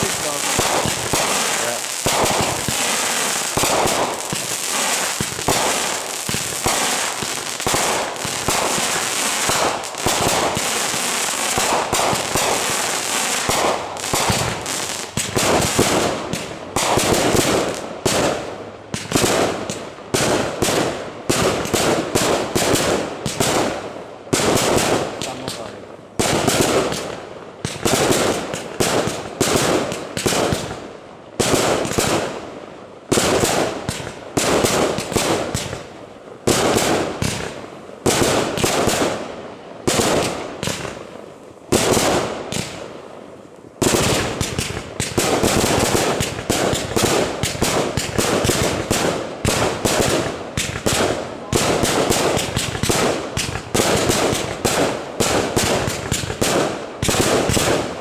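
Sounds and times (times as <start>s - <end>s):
firework bangs with rumble: 0.0s - 18.4s.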